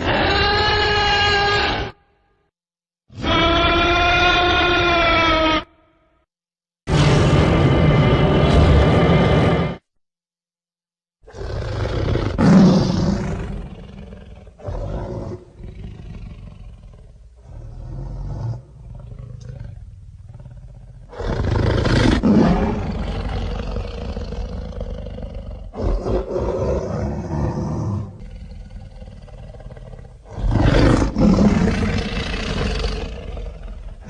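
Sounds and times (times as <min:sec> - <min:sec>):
deep roars and growls: 0:06.9 - 0:09.8, 0:11.3 - 0:34.0.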